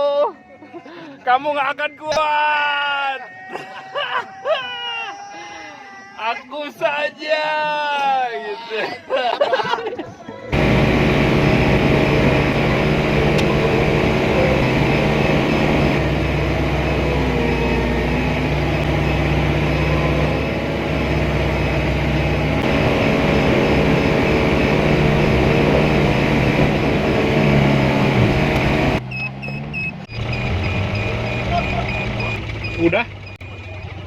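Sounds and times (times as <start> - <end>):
vehicle engine droning: 10.5 - 34.0.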